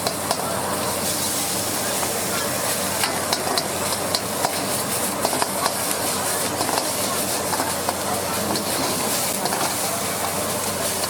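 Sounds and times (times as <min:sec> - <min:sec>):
food sizzling in hot oil: 0:00.0 - 0:11.0
metal spatula scraping wok: 0:02.8 - 0:11.0.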